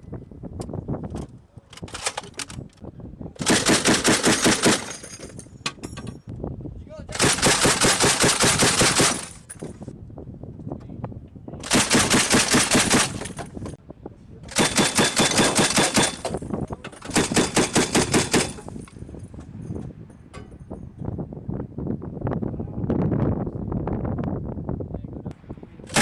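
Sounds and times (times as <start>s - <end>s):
machine gun bursts: 3.4s - 5.1s, 7.2s - 9.4s, 11.6s - 13.4s, 14.5s - 16.3s, 17.1s - 18.6s.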